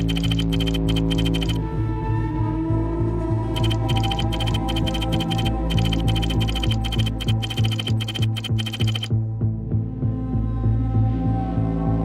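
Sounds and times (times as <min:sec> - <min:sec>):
fast high ticking: 0:00.0 - 0:01.6, 0:03.6 - 0:09.1
pulsing beat: 0:00.0 - 0:01.6, 0:03.6 - 0:09.1.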